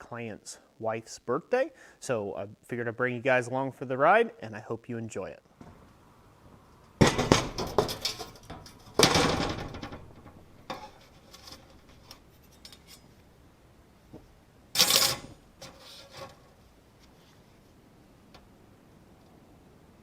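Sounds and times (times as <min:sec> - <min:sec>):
metal objects clattering: 0:07.0 - 0:13.2, 0:14.8 - 0:16.5.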